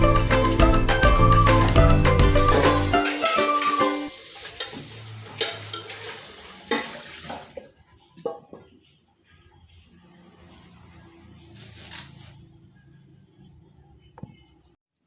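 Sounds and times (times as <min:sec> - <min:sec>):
background music: 0:00.0 - 0:04.2
kitchenware clinking: 0:00.0 - 0:08.8.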